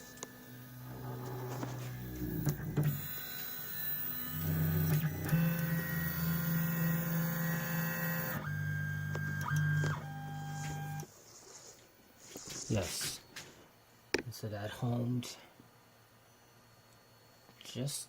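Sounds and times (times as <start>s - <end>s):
stepper motors whining: 0.2s - 11.1s.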